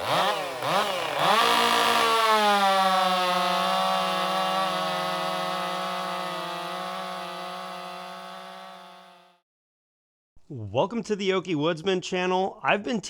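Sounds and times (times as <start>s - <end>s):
chainsaw at high revs: 0.0s - 9.4s.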